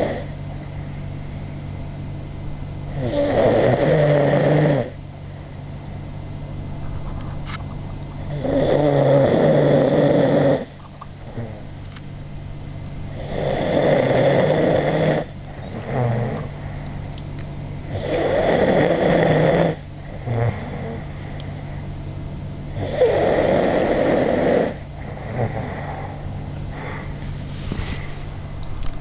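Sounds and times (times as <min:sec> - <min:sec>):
man snoring: 0:00.0 - 0:00.3, 0:02.9 - 0:05.0, 0:08.3 - 0:10.7, 0:13.1 - 0:16.5, 0:17.9 - 0:21.0, 0:22.7 - 0:26.1
steady low hum: 0:00.0 - 0:29.0.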